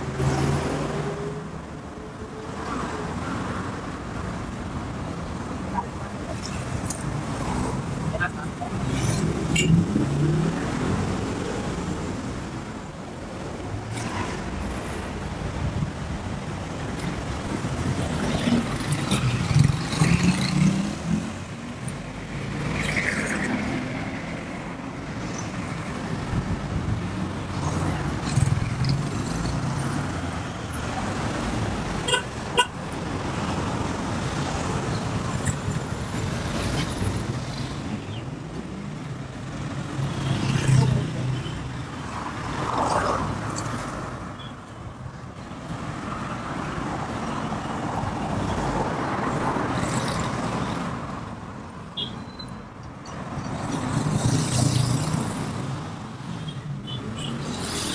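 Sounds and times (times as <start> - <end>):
vehicles passing: 0.0 - 57.9
car horn toots: 32.1 - 32.8.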